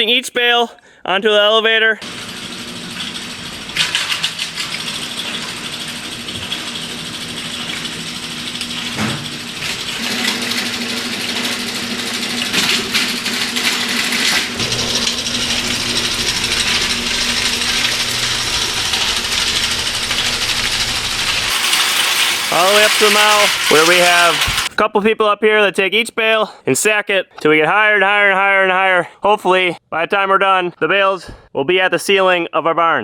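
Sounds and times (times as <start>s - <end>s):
motor hum: 2.0s - 24.7s.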